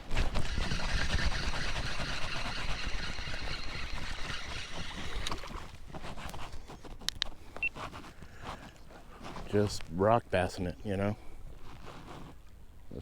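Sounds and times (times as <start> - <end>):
water rushing around kayak: 0.0 - 6.4
sharp clicks: 7.0 - 7.7.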